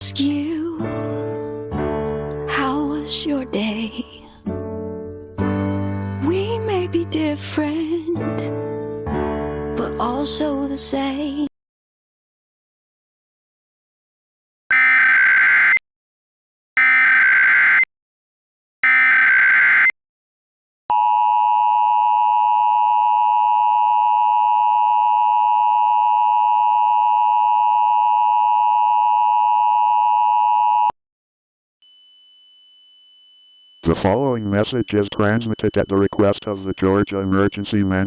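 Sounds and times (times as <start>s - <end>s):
data tone bursts: 33.8s - 38.0s
two-tone attention signal: 33.8s - 38.0s.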